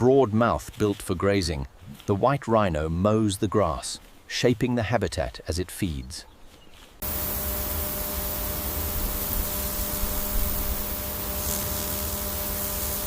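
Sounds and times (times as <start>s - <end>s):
faint even hum: 7.0s - 13.0s
steady rushing hiss: 7.0s - 13.0s.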